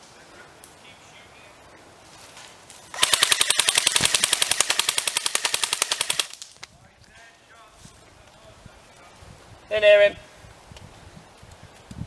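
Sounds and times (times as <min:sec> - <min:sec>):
airsoft gun full-auto burst: 0:02.9 - 0:06.4.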